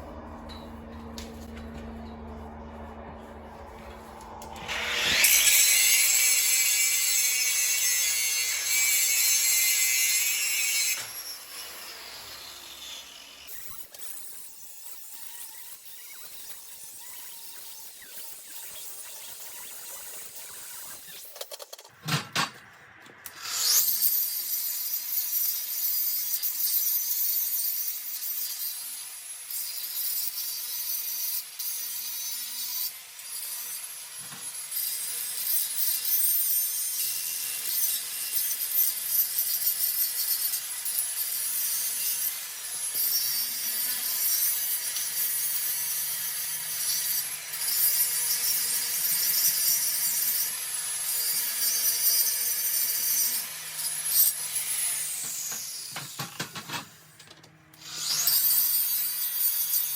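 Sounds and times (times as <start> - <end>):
grinder winding down whine: 0.0 - 7.9
angle grinder grinding metal: 0.0 - 59.9.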